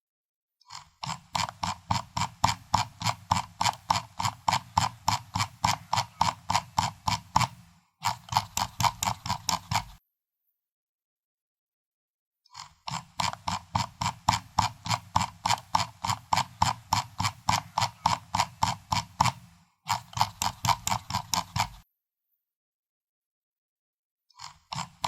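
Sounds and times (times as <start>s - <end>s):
mouse scroll wheel clicking: 0.7s - 10.0s, 12.5s - 21.9s, 24.4s - 25.0s.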